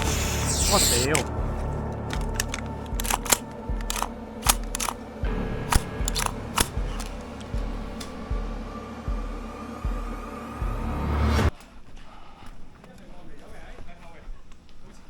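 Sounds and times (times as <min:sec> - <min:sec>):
low thumping: 0:01.1 - 0:11.0
sharp clicks and clacks: 0:02.0 - 0:05.0, 0:05.7 - 0:07.6.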